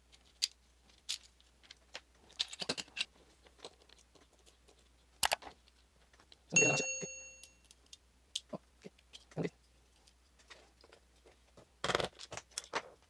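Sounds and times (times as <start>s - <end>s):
sharp metallic clink: 6.6s - 7.6s.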